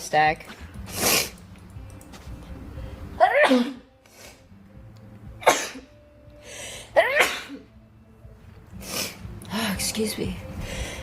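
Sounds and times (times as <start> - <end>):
woman sneezing: 3.2 - 3.9, 5.4 - 5.8, 7.0 - 7.6.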